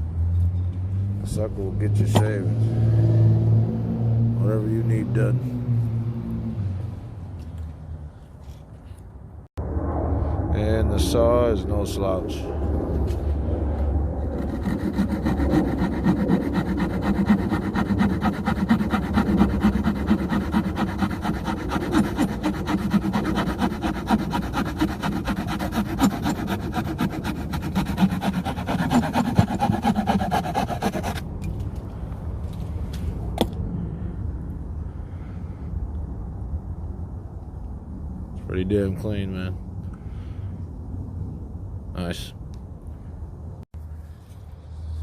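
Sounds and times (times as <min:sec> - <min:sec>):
saw blade sawing wood: 0:14.2 - 0:31.3.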